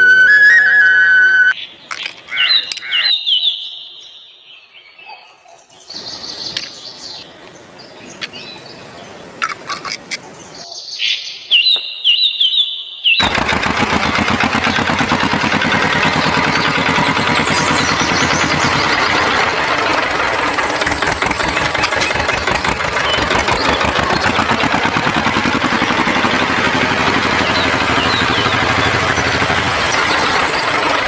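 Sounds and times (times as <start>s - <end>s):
small motor rattling: 13.2s - 31.0s.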